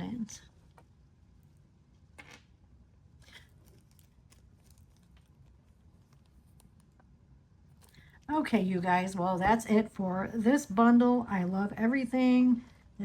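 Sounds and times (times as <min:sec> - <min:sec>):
soft rustles and small clicks: 0:03.2 - 0:08.3.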